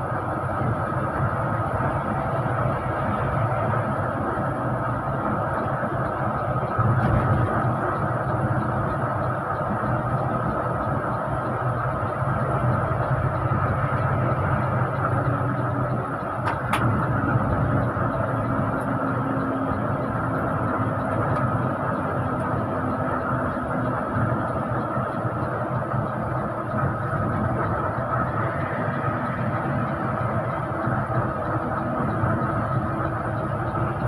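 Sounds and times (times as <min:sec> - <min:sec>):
bus engine and road noise: 0:00.0 - 0:34.0.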